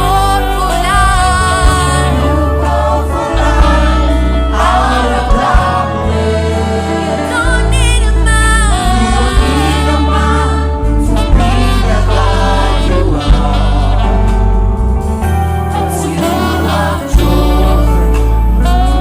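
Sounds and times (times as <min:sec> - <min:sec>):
bass line: 0:00.0 - 0:19.0
gospel choir singing: 0:00.0 - 0:19.0.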